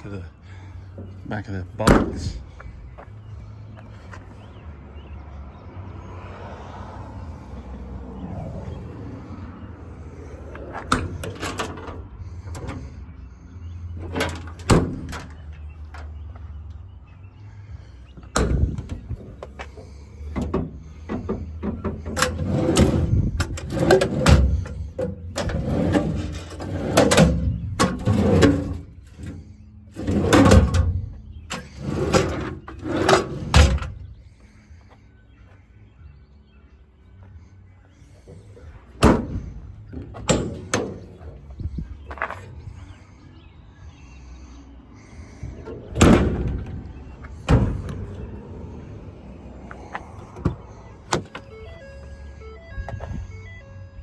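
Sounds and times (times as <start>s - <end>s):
metal toolbox doors clanking: 1.8s - 2.5s, 10.5s - 13.0s, 14.0s - 16.1s, 18.3s - 34.0s, 39.0s - 41.5s, 45.6s - 48.3s.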